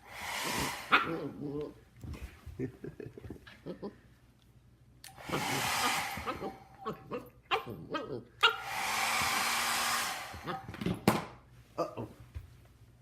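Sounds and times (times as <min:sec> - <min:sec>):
hair dryer blowing: 0:00.0 - 0:01.2, 0:05.1 - 0:06.8, 0:08.5 - 0:10.7
dog barking: 0:00.9 - 0:01.4.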